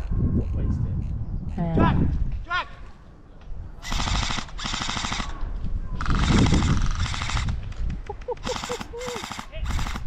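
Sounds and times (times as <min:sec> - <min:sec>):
airsoft rifle bursts: 0:03.8 - 0:05.4, 0:08.4 - 0:10.0.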